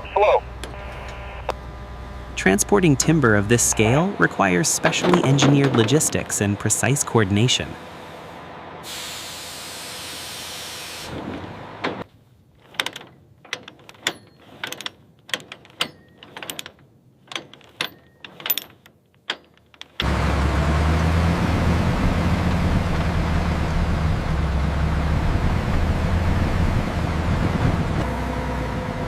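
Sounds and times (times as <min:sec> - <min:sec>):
heavy vehicle engine running: 0:00.0 - 0:12.1, 0:20.0 - 0:29.0
metallic clicks and knocks: 0:12.6 - 0:20.0.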